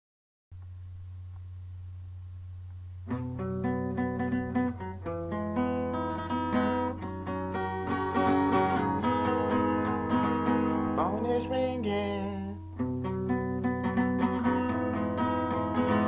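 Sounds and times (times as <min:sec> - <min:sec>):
steady low hum: 0:00.6 - 0:15.4
picked guitar music: 0:03.0 - 0:16.0.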